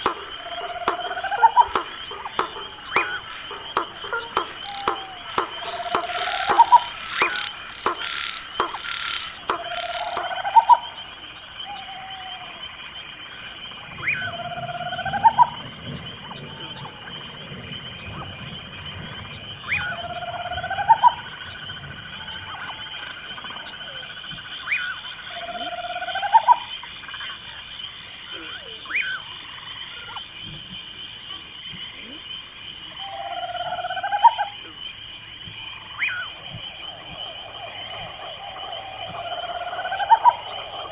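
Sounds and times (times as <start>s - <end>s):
crickets trilling: 0.0s - 40.9s
animal call rising in pitch: 36.0s - 40.9s.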